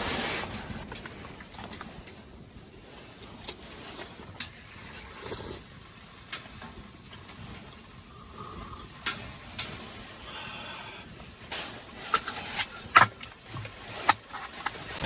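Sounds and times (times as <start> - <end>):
fire popping: 0.0 - 10.2
low steady hiss: 0.0 - 15.0
wood fire crackling: 0.0 - 15.0.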